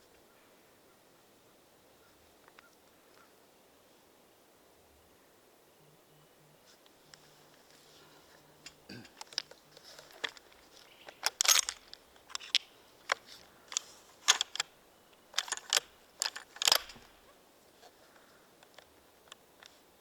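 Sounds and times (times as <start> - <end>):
sharp clicks and knocks: 8.6 - 17.2.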